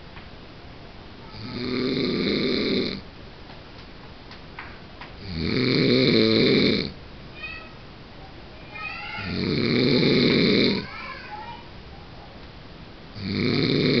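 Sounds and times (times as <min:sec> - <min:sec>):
man snoring: 0:01.3 - 0:03.0, 0:05.2 - 0:06.9, 0:09.2 - 0:10.8, 0:13.2 - 0:14.0.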